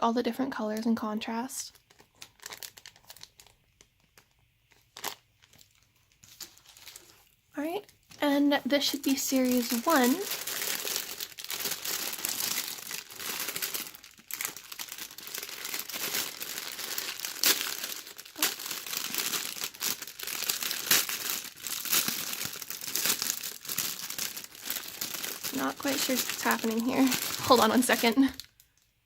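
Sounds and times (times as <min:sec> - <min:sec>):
plastic packaging crinkling: 0:01.7 - 0:29.0.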